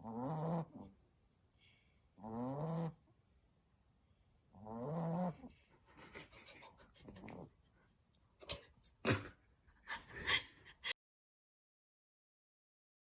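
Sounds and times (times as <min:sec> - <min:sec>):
puppy snoring: 0:00.0 - 0:01.0, 0:02.2 - 0:03.1, 0:04.5 - 0:05.6, 0:07.0 - 0:07.6.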